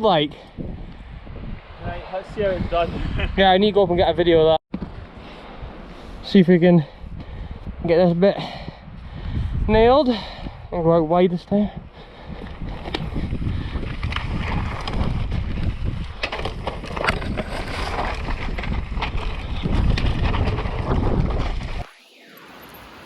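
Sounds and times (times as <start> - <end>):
wind rushing over microphone: 0.0 - 21.9
bike rattling: 12.3 - 21.8
tyres rumbling over rock: 13.8 - 21.8.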